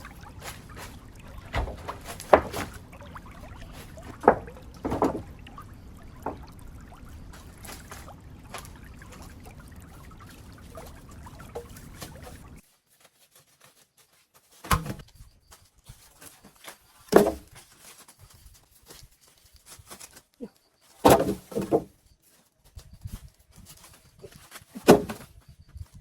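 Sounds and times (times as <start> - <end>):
rustles: 0.0 - 26.0
knocks or thuds: 0.6 - 2.8, 3.5 - 6.6, 21.0 - 21.9.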